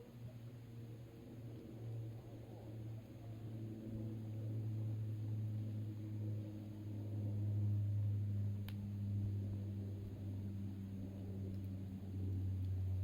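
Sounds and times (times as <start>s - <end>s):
low hum: 0.0s - 13.0s
campfire crackle: 4.2s - 6.2s, 6.8s - 13.0s.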